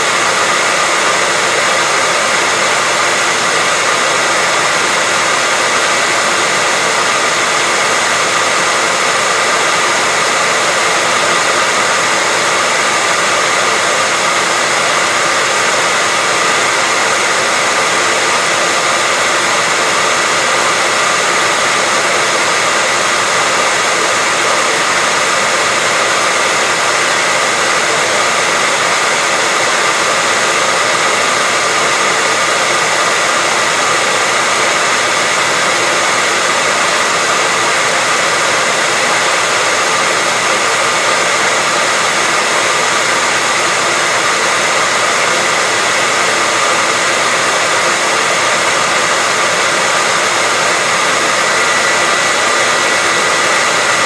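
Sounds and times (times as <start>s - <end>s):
hair dryer running: 0.0s - 54.0s.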